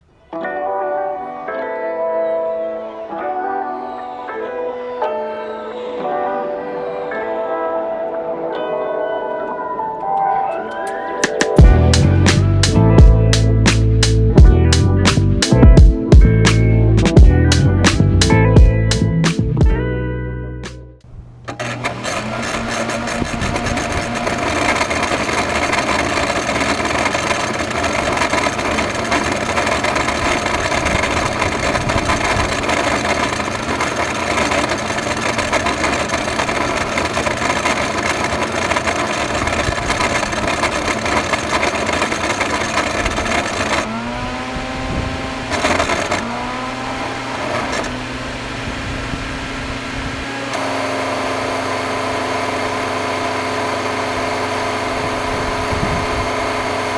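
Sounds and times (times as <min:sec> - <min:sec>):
vacuum cleaner whirring: 0:21.1 - 0:56.9.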